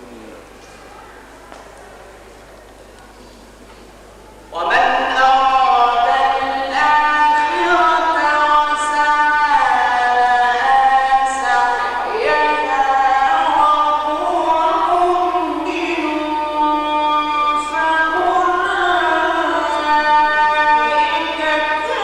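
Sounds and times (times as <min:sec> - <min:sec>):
man chanting recitation: 0:04.5 - 0:22.0.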